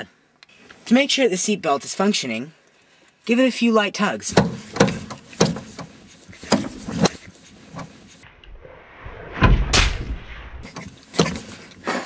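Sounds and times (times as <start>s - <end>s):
seat belt catching with thuds: 4.3s - 8.1s, 10.7s - 11.7s.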